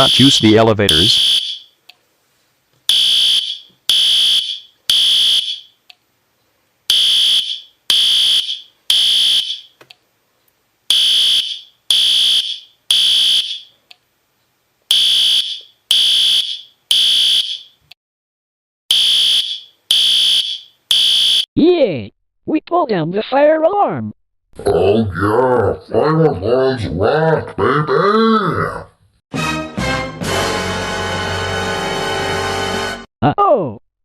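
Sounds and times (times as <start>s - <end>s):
fire alarm high beeps: 0.0s - 1.7s, 2.9s - 5.8s, 6.9s - 9.8s, 10.9s - 13.7s, 14.9s - 17.8s, 18.9s - 21.4s.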